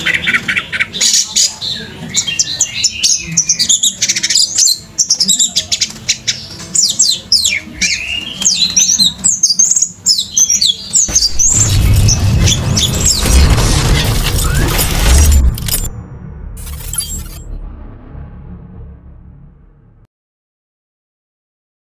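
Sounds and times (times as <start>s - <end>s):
loud noisy low rumble: 11.1s - 20.1s.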